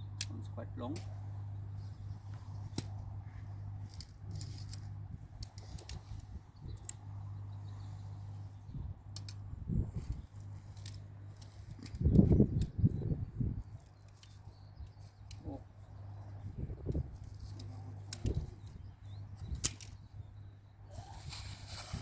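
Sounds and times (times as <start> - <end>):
steady low hum: 0.0 - 22.0
light clicks and rattles: 3.8 - 7.1, 10.0 - 13.0, 16.2 - 18.8.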